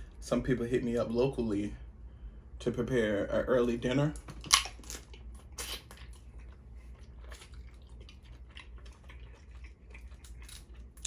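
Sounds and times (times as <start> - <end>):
close chewing of crab meat: 4.2 - 11.0.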